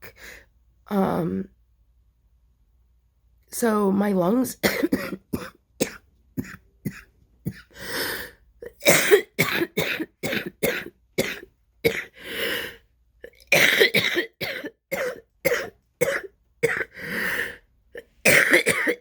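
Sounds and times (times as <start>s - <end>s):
wet coughing: 4.6s - 7.8s, 8.6s - 12.2s, 13.3s - 17.0s, 18.0s - 19.0s
drawn-out breath: 7.7s - 8.5s, 12.1s - 12.9s, 16.9s - 17.7s.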